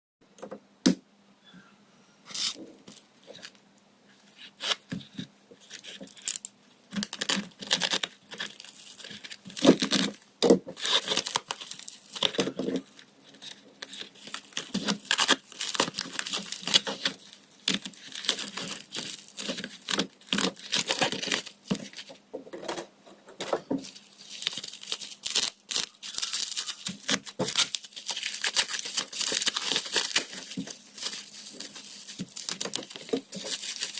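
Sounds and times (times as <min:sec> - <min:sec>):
packaging torn and crinkled: 0:05.6 - 0:10.2, 0:10.8 - 0:22.1, 0:23.8 - 0:33.9.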